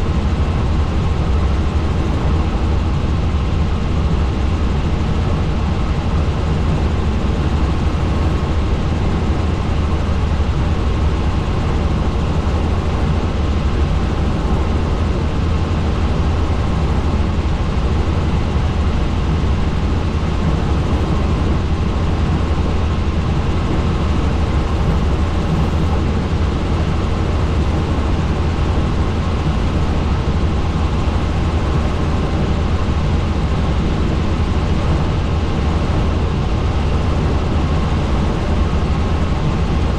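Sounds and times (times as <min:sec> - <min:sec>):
helicopter droning in flight: 0:00.0 - 0:39.9.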